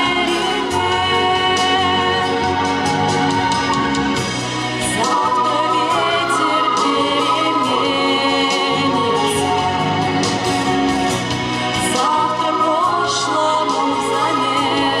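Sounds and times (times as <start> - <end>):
orchestral music: 0.0 - 15.0
person singing long notes: 4.9 - 10.2.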